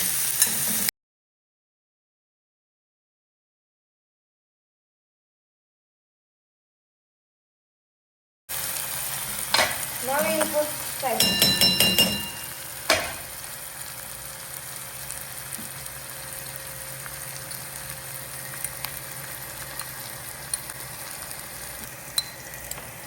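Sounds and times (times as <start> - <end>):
masala sizzling in hot oil: 0.0 - 0.9, 8.5 - 23.0.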